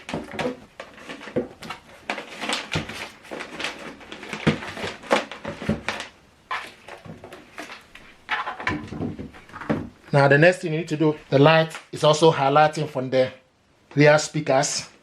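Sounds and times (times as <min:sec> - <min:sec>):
plastic speaker clicks and knocks: 0:08.3 - 0:10.0.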